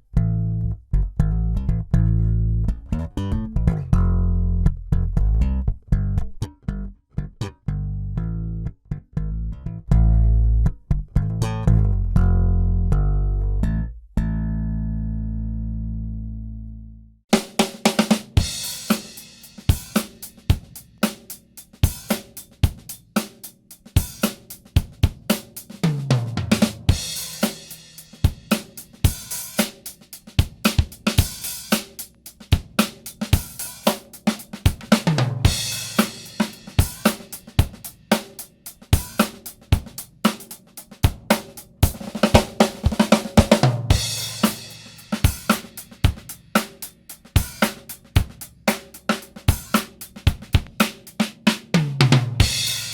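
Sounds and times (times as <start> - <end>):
drum kit groove: 17.3 - 52.9.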